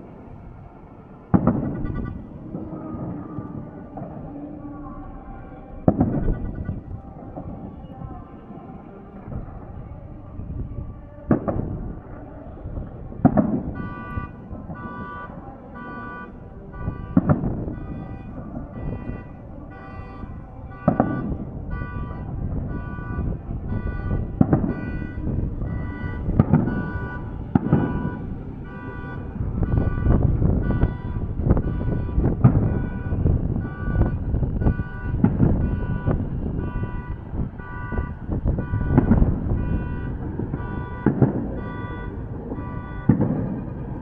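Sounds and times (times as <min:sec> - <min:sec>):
fireworks bursting with bangs: 0:00.0 - 0:44.0
electronic alarm beeping: 0:13.8 - 0:43.2.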